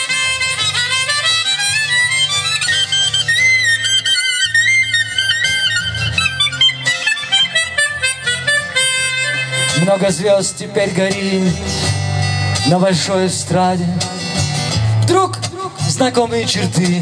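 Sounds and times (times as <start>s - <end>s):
harmonica solo with bent notes: 0.0s - 12.8s
low instrumental accompaniment: 0.0s - 17.0s.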